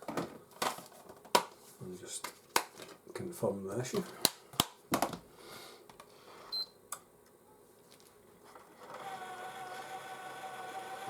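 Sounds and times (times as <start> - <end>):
disc drive motor whine: 8.4 - 11.0.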